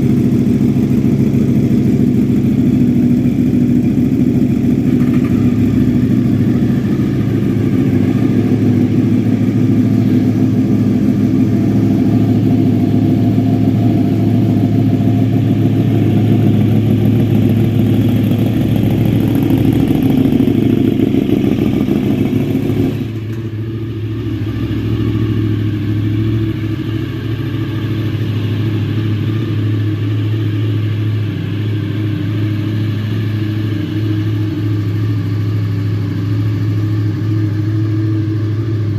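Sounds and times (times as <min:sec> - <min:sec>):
motorcycle engine idling: 0:00.0 - 0:38.9.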